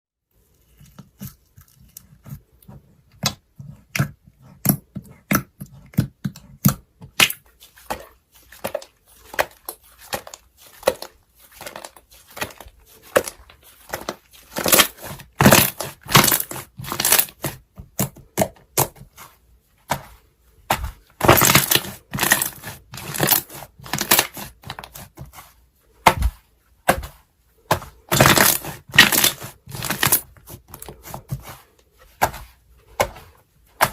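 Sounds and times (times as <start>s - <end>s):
slime popping and crackling: 9.4s - 18.1s, 21.2s - 25.0s, 28.1s - 30.9s.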